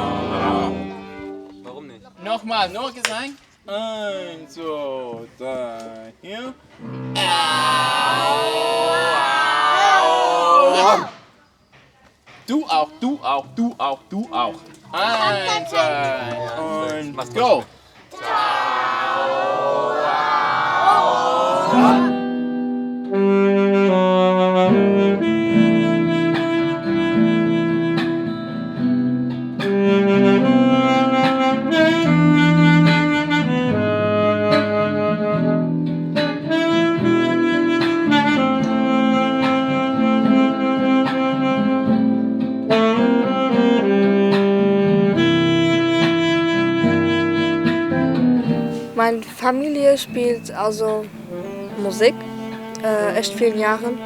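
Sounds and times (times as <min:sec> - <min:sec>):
instrumental ensemble playing: 0:00.0 - 0:01.9, 0:21.6 - 0:54.0.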